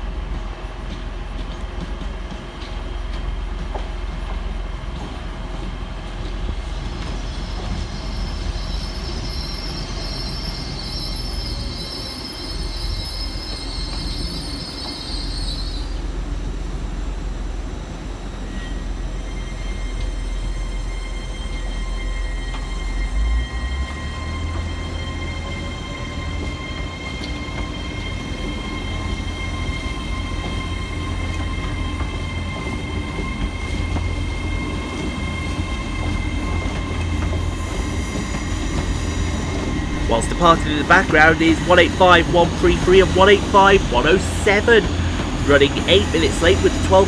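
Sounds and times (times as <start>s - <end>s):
steady high tone: 40.0s - 47.0s.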